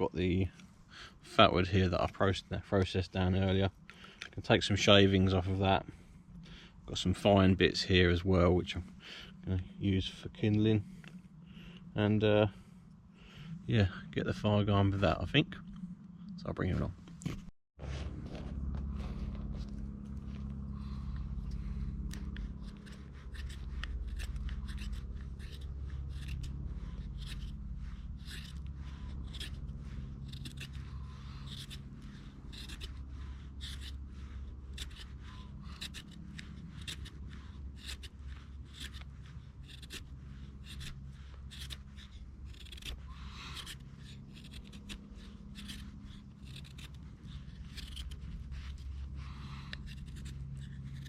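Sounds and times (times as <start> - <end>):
knife scraping wood: 20.3 - 51.0.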